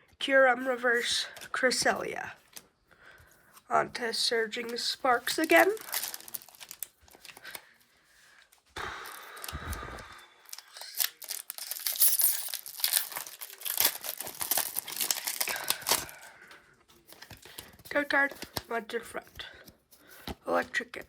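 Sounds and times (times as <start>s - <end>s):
foil wrapper tearing and crinkling: 5.3s - 7.6s, 10.5s - 16.3s.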